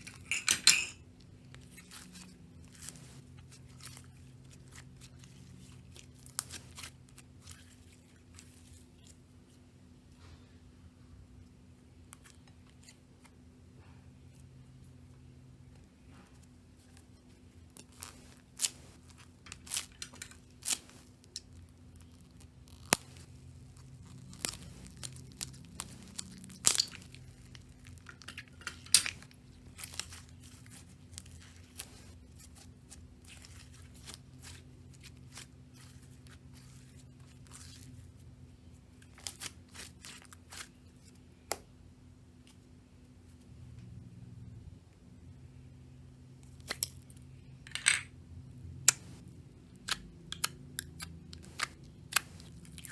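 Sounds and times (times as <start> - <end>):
faint low hum: 0.0 - 52.9
sticky slime crackles and pops: 20.5 - 28.3.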